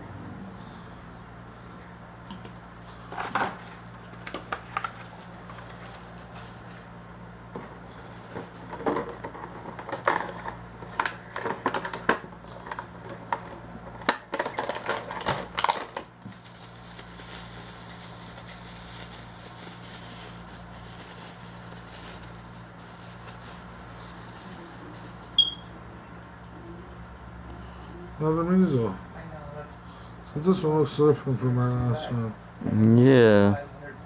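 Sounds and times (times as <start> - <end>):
packaging clicks and crinkles: 3.2 - 6.8, 8.7 - 25.4
steady low hum: 15.4 - 34.0.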